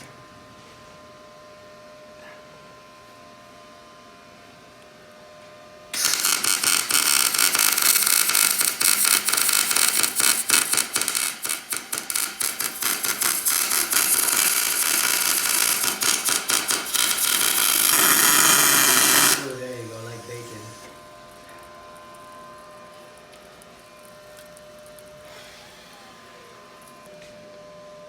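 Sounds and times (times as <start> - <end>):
welding arc crackling: 6.0 - 25.5.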